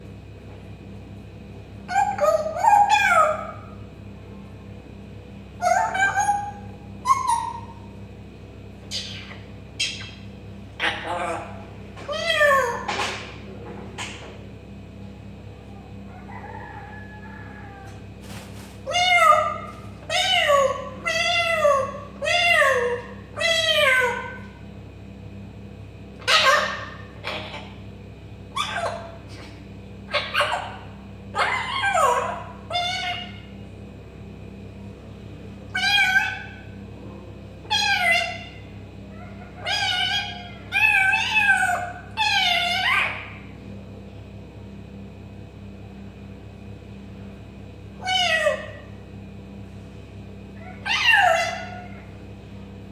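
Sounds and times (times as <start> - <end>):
parrot soft call: 5.6 - 7.9, 16.1 - 18.0, 18.8 - 24.6, 28.5 - 33.6, 35.7 - 36.8, 37.6 - 43.6, 48.0 - 49.0, 50.6 - 52.2
parrot imitating cat meows: 16.3 - 18.0, 18.9 - 24.4, 31.4 - 33.4, 37.7 - 38.6, 39.2 - 43.4, 48.0 - 48.9, 50.6 - 52.1
parrot mimicking cat meows: 39.2 - 43.4, 48.0 - 48.9, 50.6 - 52.0.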